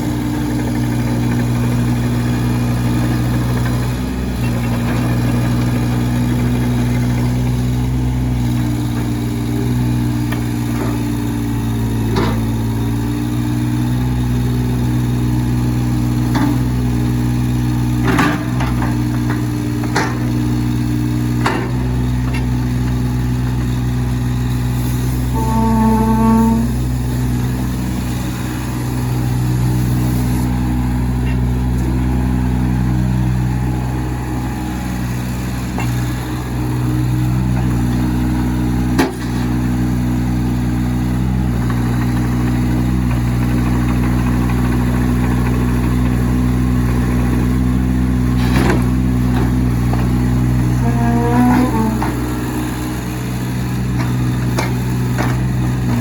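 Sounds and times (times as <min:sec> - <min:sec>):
diesel engine running: 0:00.0 - 0:56.0
pitched whine: 0:25.3 - 0:27.2.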